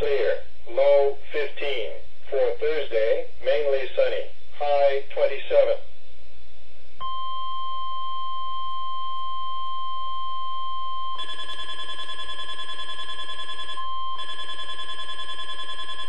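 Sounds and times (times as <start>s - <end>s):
rapid warbling alarm beep: 10.8s - 16.0s.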